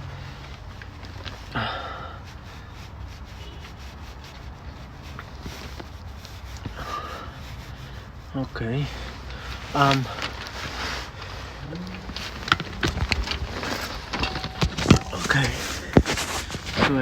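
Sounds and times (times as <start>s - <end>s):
steady low hum: 4.4s - 17.0s
bolts being threaded by hand: 12.0s - 17.0s.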